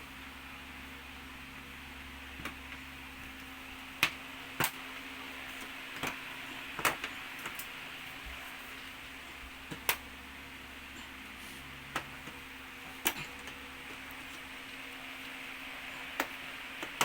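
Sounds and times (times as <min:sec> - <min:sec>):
faint hiss and hum: 0:00.0 - 0:17.0.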